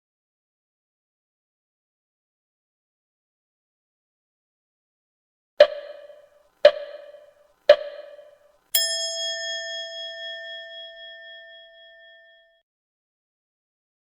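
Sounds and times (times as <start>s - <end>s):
short ding tones: 5.6s - 12.5s
long ringing ding: 8.8s - 12.6s.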